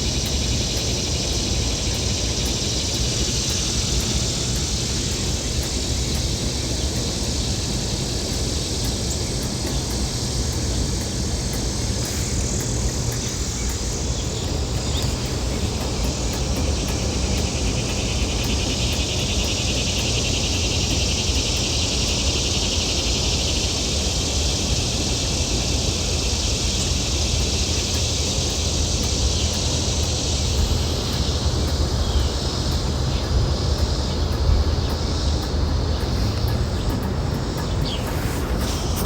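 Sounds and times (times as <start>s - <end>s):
high-pitched insect chorus: 0.0s - 39.0s.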